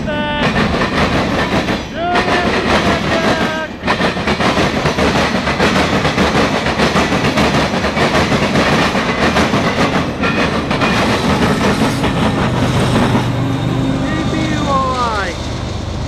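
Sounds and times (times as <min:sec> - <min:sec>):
train wheels clacking on rails: 0:00.0 - 0:16.0.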